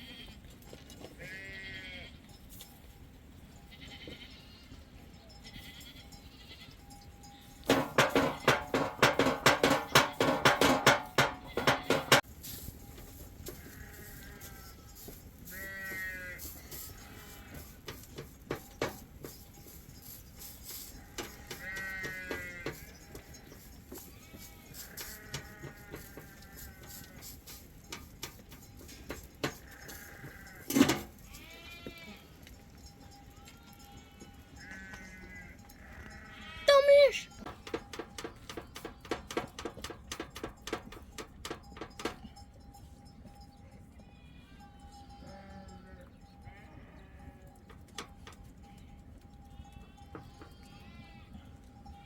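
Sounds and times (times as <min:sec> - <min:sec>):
sheep and goats bleating: 0:00.0 - 0:02.3, 0:03.6 - 0:12.2, 0:13.4 - 0:18.1, 0:20.7 - 0:27.6, 0:29.4 - 0:32.6, 0:33.2 - 0:37.5, 0:44.0 - 0:47.7, 0:48.5 - 0:52.0.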